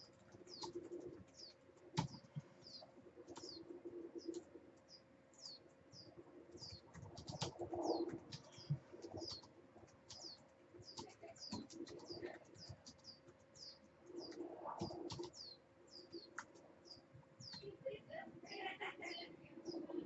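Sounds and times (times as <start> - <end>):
small bird chirping: 0.0 - 20.0
soft clicks: 6.6 - 15.5, 16.1 - 17.7.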